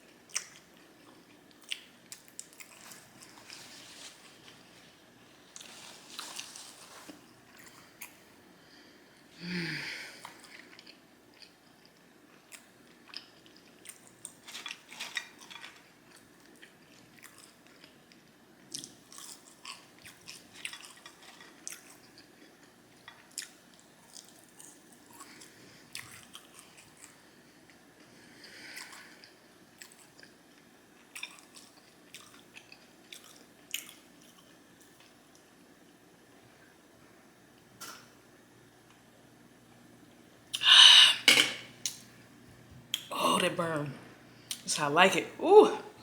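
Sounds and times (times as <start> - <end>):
person chewing food: 0.0 - 8.3, 10.2 - 35.5.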